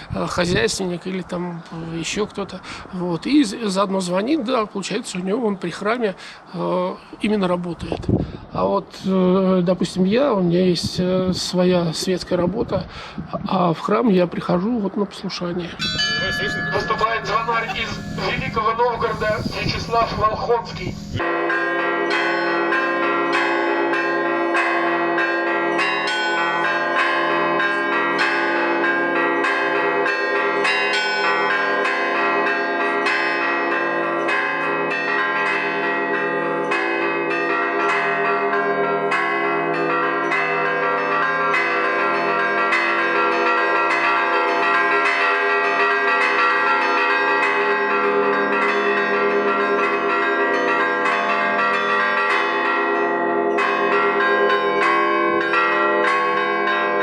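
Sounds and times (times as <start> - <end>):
church bells pealing: 15.7 - 57.0
hum of large bells: 15.8 - 57.0.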